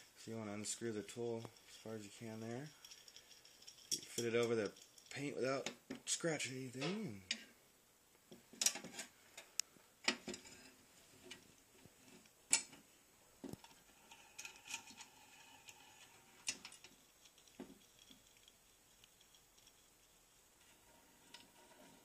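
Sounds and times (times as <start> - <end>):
metal tool clicking and clinking: 2.7 - 5.6.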